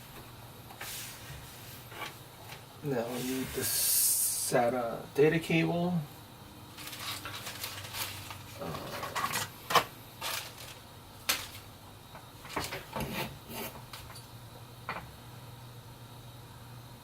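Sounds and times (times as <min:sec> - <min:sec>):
hands rustling computer parts: 0:06.8 - 0:14.2.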